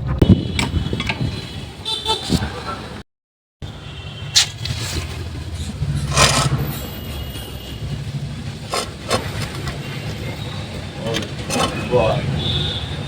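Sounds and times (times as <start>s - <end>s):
tool scraping metal: 6.0s - 6.9s.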